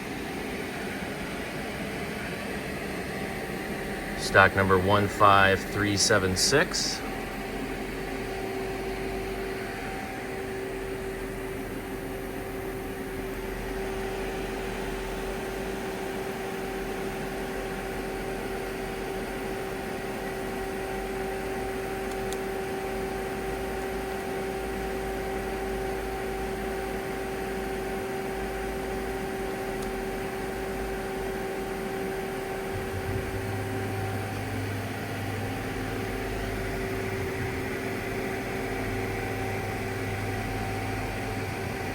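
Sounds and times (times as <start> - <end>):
lathe humming with steady tones: 0.0 - 41.9
deeper machine hum: 3.3 - 16.0, 28.8 - 41.9.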